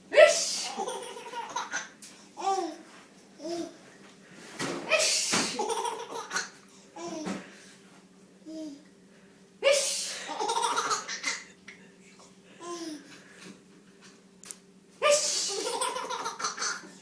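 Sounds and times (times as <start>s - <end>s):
person sneezing: 4.9s - 5.6s, 9.6s - 10.3s, 15.0s - 15.6s
young child laughing: 15.0s - 17.0s.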